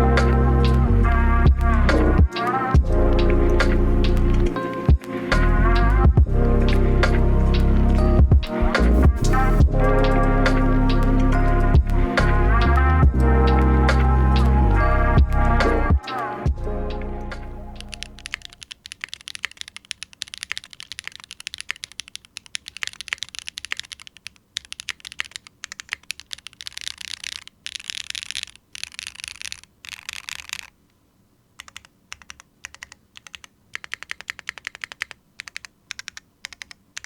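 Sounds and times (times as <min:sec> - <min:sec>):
keyboard key clicks: 0:17.8 - 0:30.7, 0:31.6 - 0:37.0.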